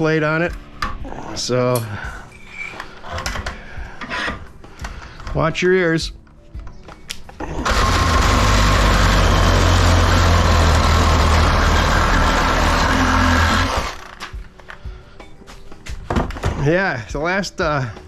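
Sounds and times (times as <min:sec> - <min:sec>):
power saw cutting metal tube: 0:07.6 - 0:14.2.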